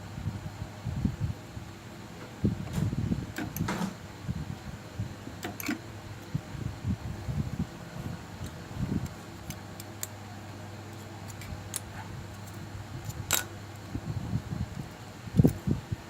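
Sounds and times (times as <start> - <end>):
sharp welding clicks and snaps: 8.4 - 10.2.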